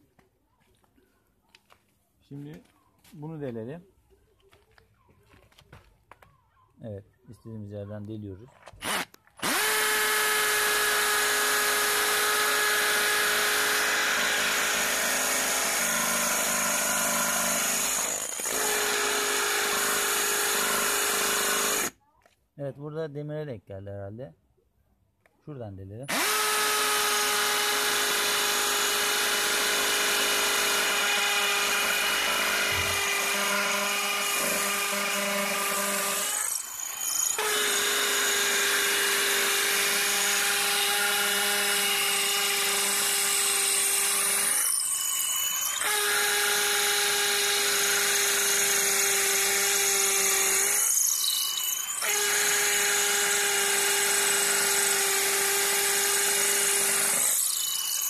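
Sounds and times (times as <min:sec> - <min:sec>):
hammer drill boring into concrete: 0:08.8 - 0:22.0, 0:26.1 - 0:58.0.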